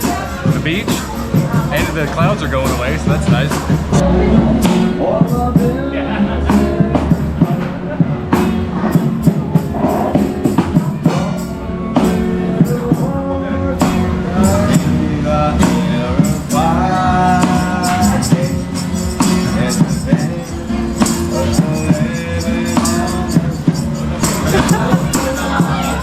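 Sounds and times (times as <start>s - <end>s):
instrumental accompaniment: 0.0s - 26.0s
person singing: 0.0s - 26.0s
tambourine jingling: 15.7s - 26.0s.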